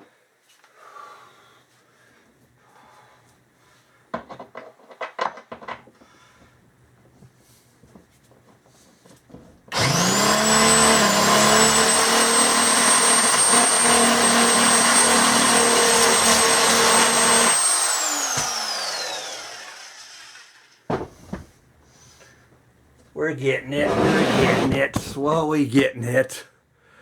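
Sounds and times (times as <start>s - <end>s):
power tool motor whining: 9.7s - 20.7s.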